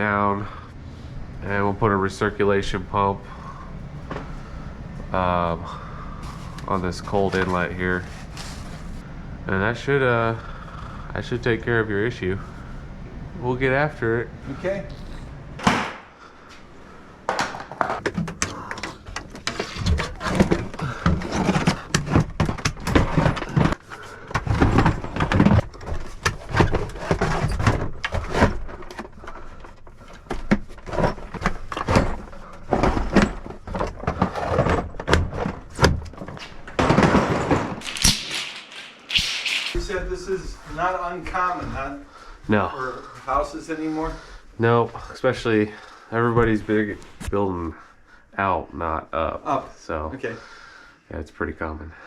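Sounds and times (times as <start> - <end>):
knocks and thuds of handled objects: 17.3 - 39.9.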